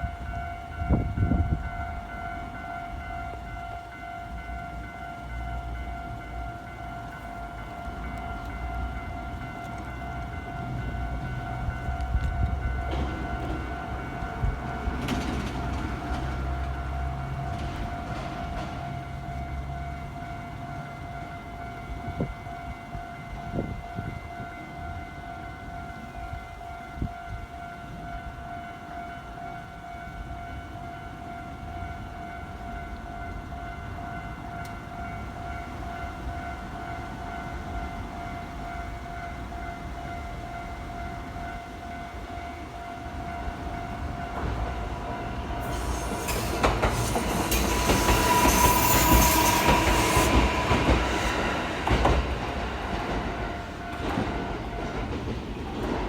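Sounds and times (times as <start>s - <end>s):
train passing: 0.0s - 56.0s
level crossing alarm ringing: 41.5s - 55.0s.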